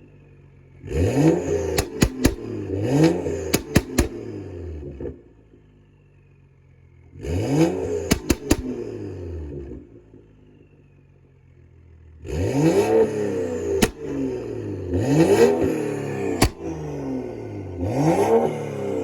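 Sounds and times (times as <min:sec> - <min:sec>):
car engine revving: 0:00.7 - 0:05.3, 0:07.1 - 0:10.3, 0:12.2 - 0:19.0
car engine idling: 0:01.6 - 0:07.2, 0:08.0 - 0:12.3, 0:13.4 - 0:19.0
exhaust pops: 0:01.7 - 0:04.5, 0:08.1 - 0:09.0, 0:13.8 - 0:14.5, 0:16.3 - 0:17.2.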